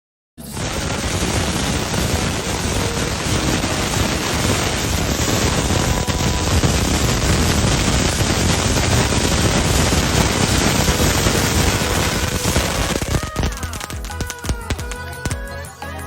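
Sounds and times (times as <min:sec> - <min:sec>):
music: 0:00.4 - 0:07.4, 0:11.0 - 0:16.0
rapid crackling and popping: 0:00.5 - 0:15.7.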